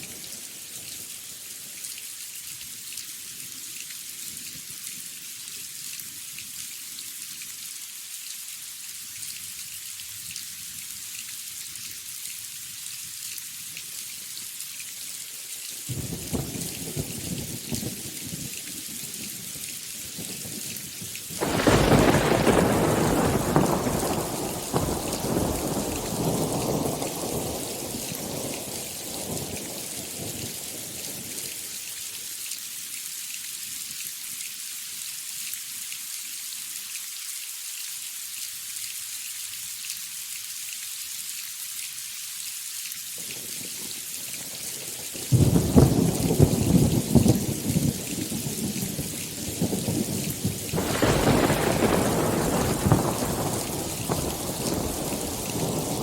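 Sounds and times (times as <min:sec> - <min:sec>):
rain hiss: 0:00.0 - 0:56.0
loud thunderclap: 0:21.4 - 0:28.3, 0:50.8 - 0:56.0
thunder rumbling: 0:21.4 - 0:29.6, 0:49.6 - 0:56.0.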